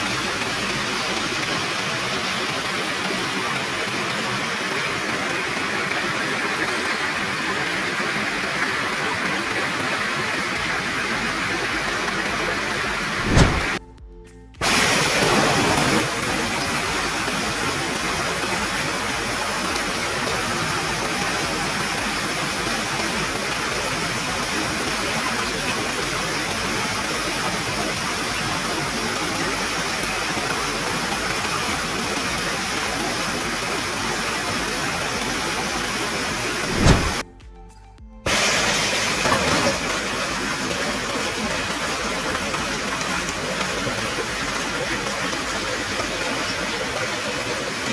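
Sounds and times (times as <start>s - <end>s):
waterfall rushing: 0.0s - 13.8s, 14.6s - 37.2s.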